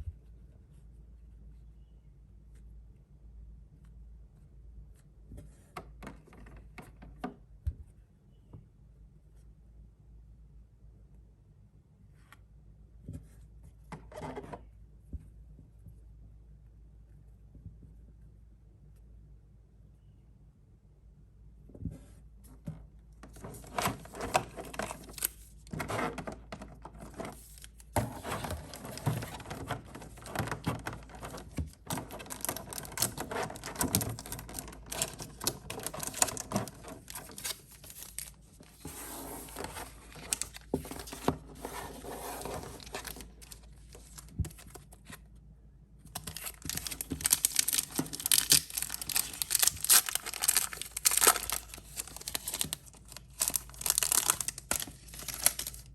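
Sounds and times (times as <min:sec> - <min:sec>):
packaging crinkling and tearing: 0:23.4 - 0:25.6, 0:26.9 - 0:38.8, 0:39.4 - 0:41.3, 0:42.4 - 0:44.9, 0:46.2 - 0:55.9.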